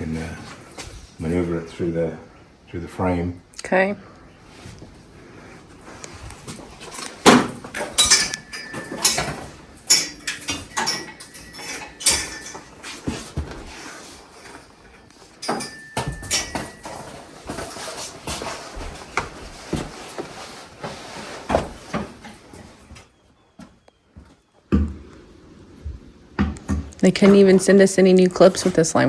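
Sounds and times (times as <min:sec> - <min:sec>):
metal tube clanking against chassis: 0:06.9 - 0:13.2.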